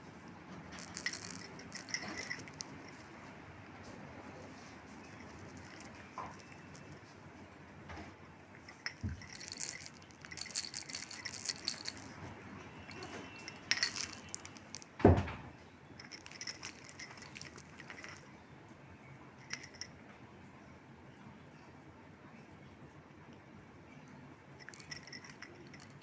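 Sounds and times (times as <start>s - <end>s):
small hard objects rattling: 0.7s - 3.0s, 5.1s - 7.0s, 8.6s - 15.0s, 16.0s - 18.3s, 19.4s - 19.9s, 24.6s - 26.0s.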